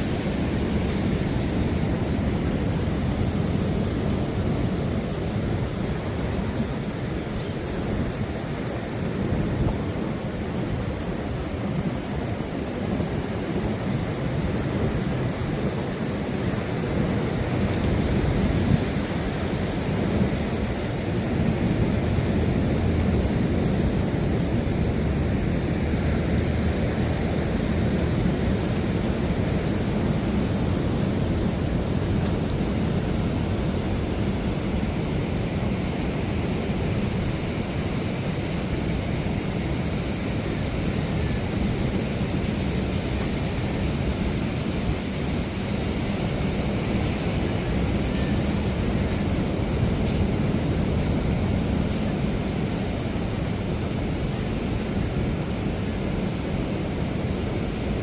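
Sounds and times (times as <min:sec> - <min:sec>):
ocean surf: 0:00.0 - 0:58.0
wind: 0:00.0 - 0:58.0.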